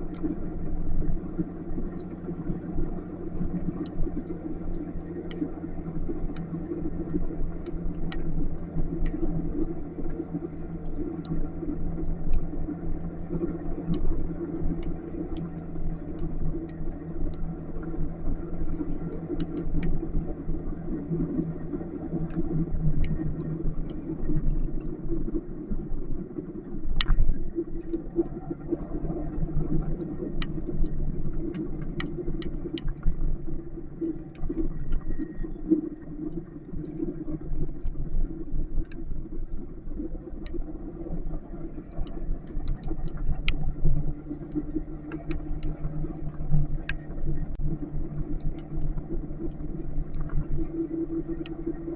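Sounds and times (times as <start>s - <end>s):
motorcycle engine hum: 0.0s - 51.9s.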